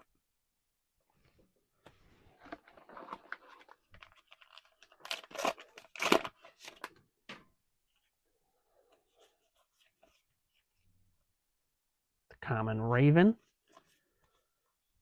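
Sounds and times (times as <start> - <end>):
wrapper crinkling: 2.4 - 6.9
wrapper tearing: 2.8 - 6.9.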